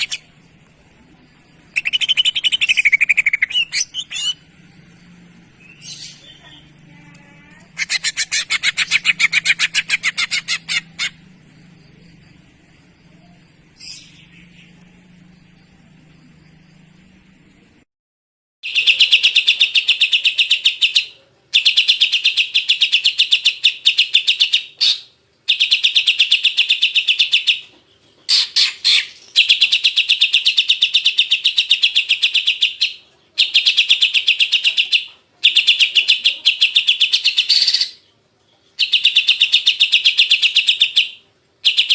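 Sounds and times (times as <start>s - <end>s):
bird harsh chattering: 0.0s - 0.4s, 1.7s - 4.5s, 7.6s - 11.2s.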